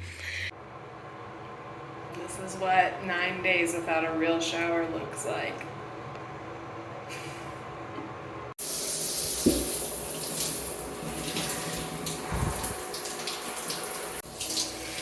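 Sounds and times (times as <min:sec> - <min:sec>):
shower water spraying: 0:08.6 - 0:15.0.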